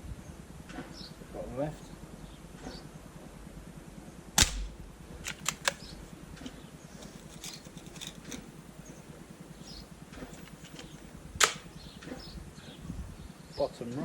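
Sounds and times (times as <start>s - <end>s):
air pistol shot: 4.4s - 5.9s, 11.4s - 11.8s.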